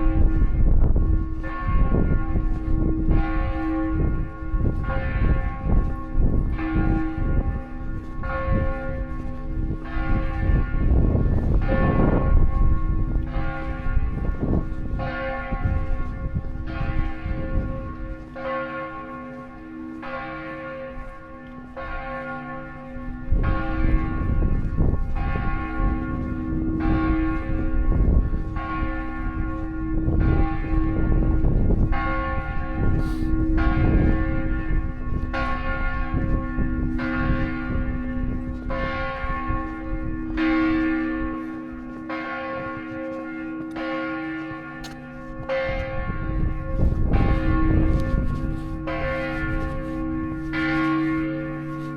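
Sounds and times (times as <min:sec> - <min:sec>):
church bells tolling: 0:00.0 - 0:51.9.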